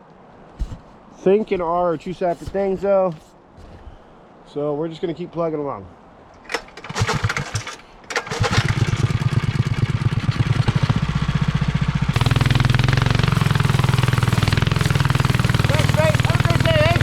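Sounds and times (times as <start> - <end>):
small engine running: 6.9 - 17.0.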